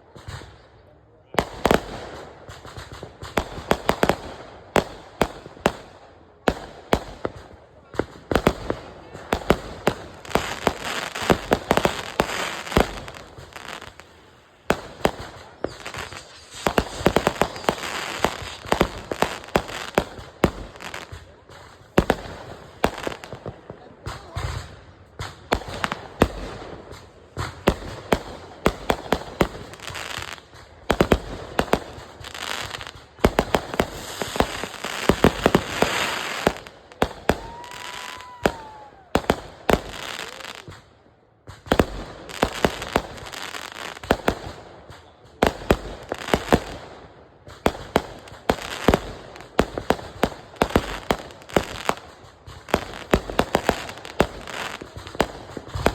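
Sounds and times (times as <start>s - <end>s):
fireworks bangs and crackles: 0.0s - 55.9s
firework whistle: 15.5s - 18.6s, 37.1s - 39.2s.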